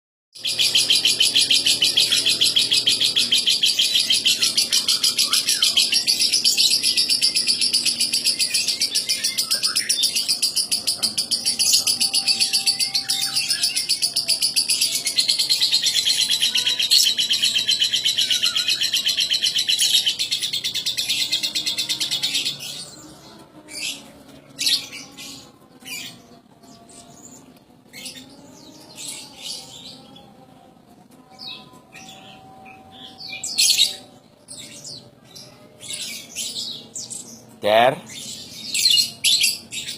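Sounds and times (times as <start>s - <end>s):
bird chirps: 0.4s - 23.1s.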